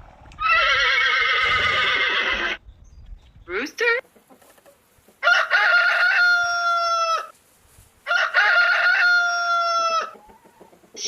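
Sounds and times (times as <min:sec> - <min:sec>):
rooster crowing: 0:05.2 - 0:07.3, 0:08.0 - 0:10.6.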